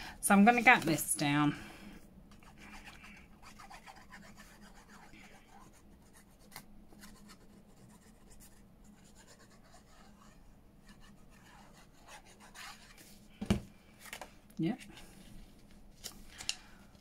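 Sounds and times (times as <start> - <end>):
paper rubbing and scratching: 2.4 - 13.2.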